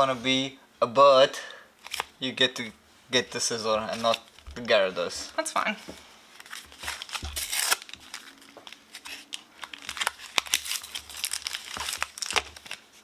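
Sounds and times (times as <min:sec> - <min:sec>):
foil wrapper crinkling: 0:01.8 - 0:02.1, 0:06.3 - 0:13.0.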